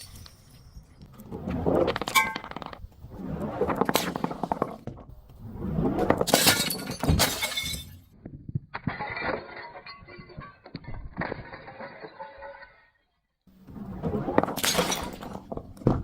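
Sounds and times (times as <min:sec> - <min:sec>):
glass breaking and crunching: 0:06.3 - 0:08.1.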